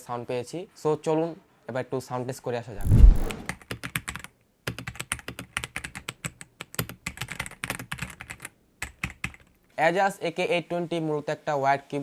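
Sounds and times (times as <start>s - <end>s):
mechanical keyboard typing: 3.1s - 9.5s.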